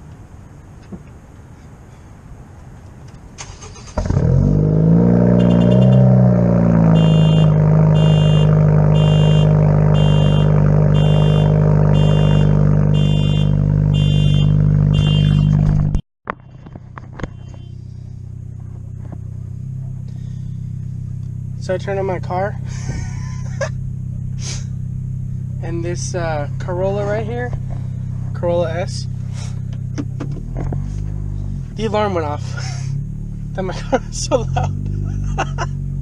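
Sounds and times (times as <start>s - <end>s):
car engine starting and idling: 3.0s - 36.0s
car alarm pulsing: 5.2s - 16.0s.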